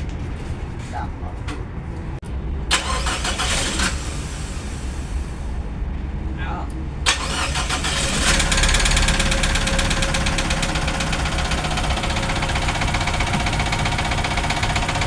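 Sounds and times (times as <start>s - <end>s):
car engine revving: 7.1s - 15.0s
rapid ticking rattle: 8.3s - 15.0s.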